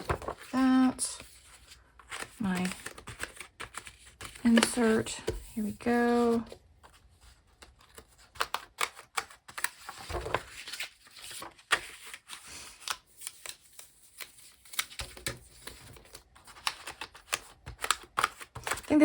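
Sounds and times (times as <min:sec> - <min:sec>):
paper pages rustling: 0:00.0 - 0:18.9
planner discs clicking: 0:16.5 - 0:18.9.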